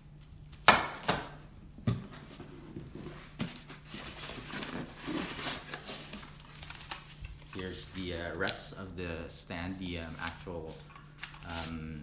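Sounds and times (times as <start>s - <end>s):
packing material rustling: 3.5s - 8.6s.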